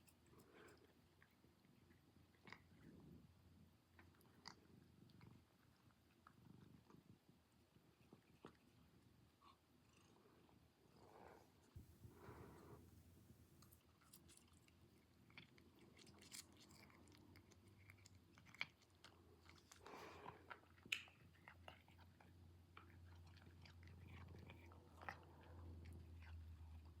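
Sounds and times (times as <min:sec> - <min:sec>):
low steady hum: 0:09.8 - 0:16.1
cat chewing crunchy treats: 0:13.5 - 0:27.0.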